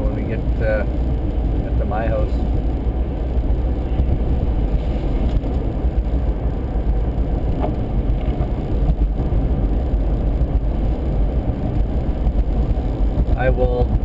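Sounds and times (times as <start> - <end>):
car interior road rumble: 0.0 - 14.0.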